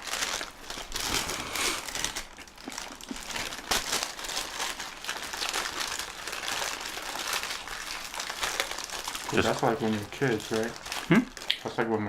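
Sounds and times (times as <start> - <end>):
paper wrapper crinkling: 0.0 - 11.9.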